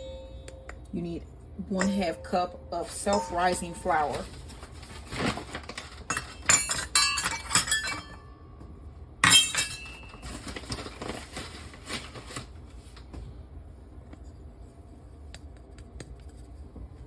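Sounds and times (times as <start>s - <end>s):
glassware clinking: 1.7s - 4.2s, 6.1s - 8.3s, 9.2s - 10.2s.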